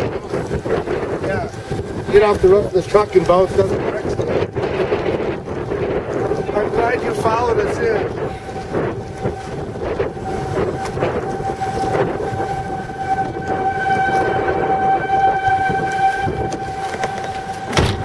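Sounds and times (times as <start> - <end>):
wind rushing on microphone: 0.0 - 18.0
steady howl on one note: 5.8 - 18.0.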